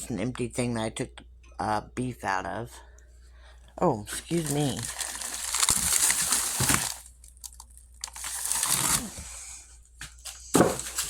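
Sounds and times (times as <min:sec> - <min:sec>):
plastic packaging crinkling: 0:04.1 - 0:09.4, 0:10.2 - 0:11.0.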